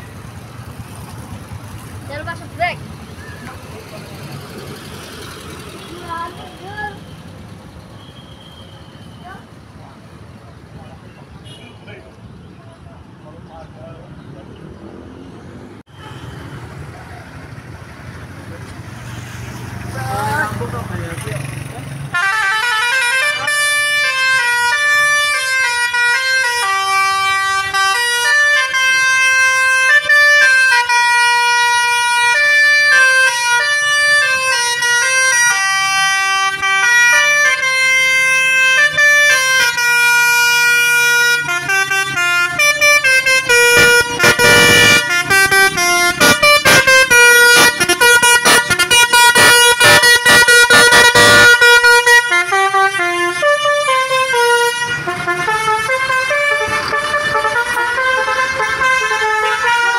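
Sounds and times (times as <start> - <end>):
multi-tone air horn tune: 22.2 - 59.9.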